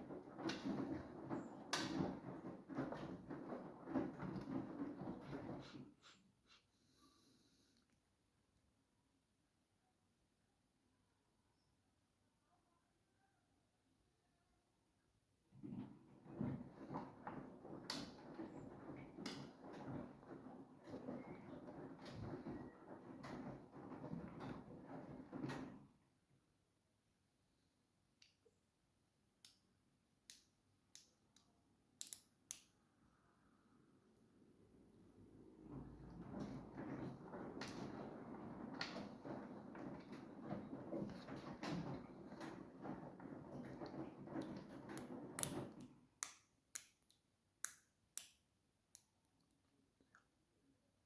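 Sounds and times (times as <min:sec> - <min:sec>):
washing machine running: 0:00.0 - 0:05.8, 0:15.6 - 0:25.9, 0:34.6 - 0:45.9.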